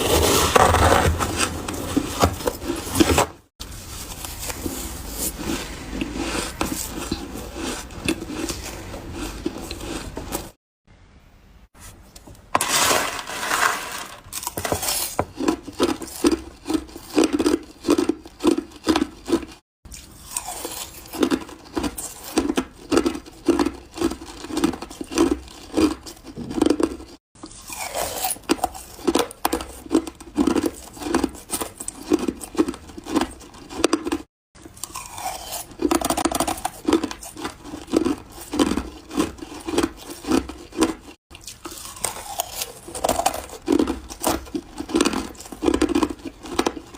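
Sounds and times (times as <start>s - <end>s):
ice being chewed: 4.0s - 10.6s, 14.3s - 46.9s.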